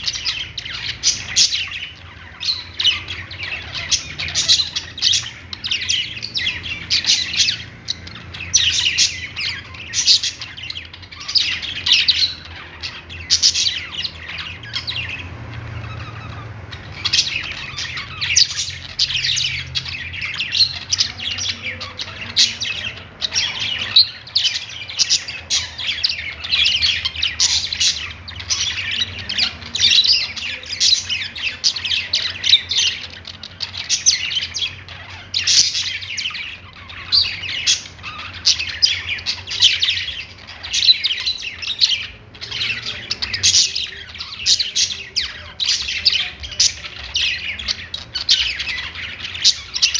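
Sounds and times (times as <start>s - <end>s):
budgerigars chirping and warbling: 0.0s - 49.9s.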